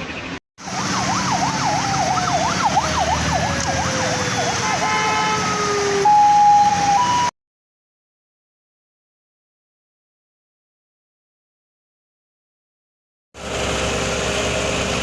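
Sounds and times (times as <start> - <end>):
street traffic: 0.0 - 7.3, 13.4 - 15.0
second siren tone sliding down: 0.6 - 7.3
emergency siren wailing: 0.6 - 7.4.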